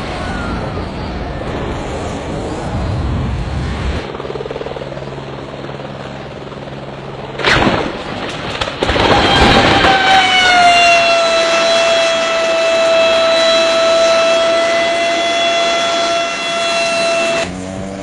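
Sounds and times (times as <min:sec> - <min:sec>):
rushing noise with high whine: 0:00.0 - 0:05.8
low engine drone: 0:00.0 - 0:18.0.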